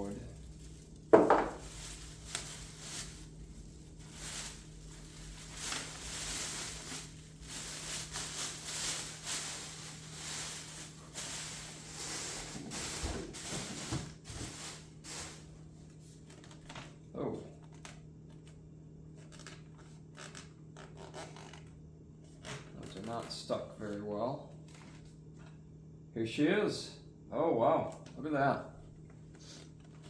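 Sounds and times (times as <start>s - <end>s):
packaging rustling and crinkling: 0.0s - 17.0s.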